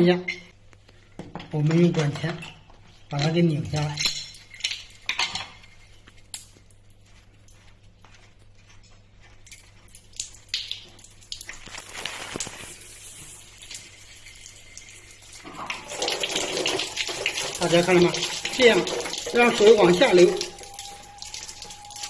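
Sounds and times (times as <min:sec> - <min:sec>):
water running out of pipe: 0:10.2 - 0:22.0.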